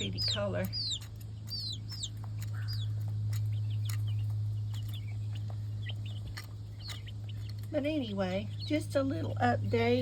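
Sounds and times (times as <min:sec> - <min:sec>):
chicks peeping: 0:00.0 - 0:10.0
steady low hum: 0:00.0 - 0:10.0.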